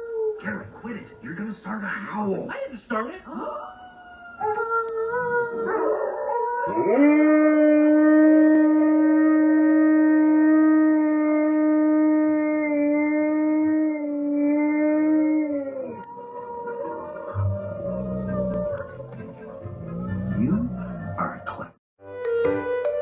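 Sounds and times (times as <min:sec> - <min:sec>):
dog howling: 0:00.0 - 0:00.4, 0:03.4 - 0:21.6.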